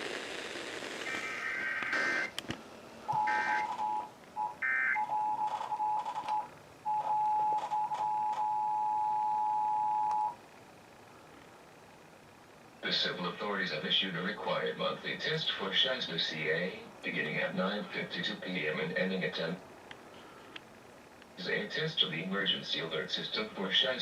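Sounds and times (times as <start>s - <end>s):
data burst tones: 0.0s - 2.4s, 3.1s - 6.0s
two-tone alert signal: 3.1s - 6.0s.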